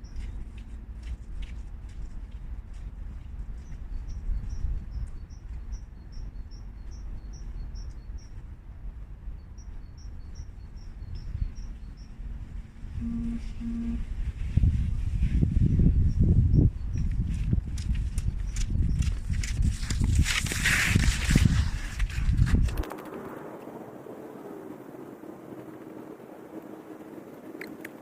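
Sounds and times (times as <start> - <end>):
low rumbling noise: 10.3 - 16.9.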